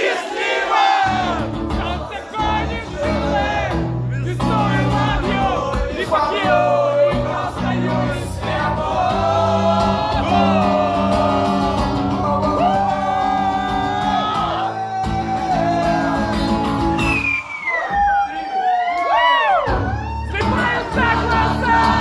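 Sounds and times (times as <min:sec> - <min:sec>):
crowd shouting along: 0:00.0 - 0:22.0
person singing: 0:04.3 - 0:17.1.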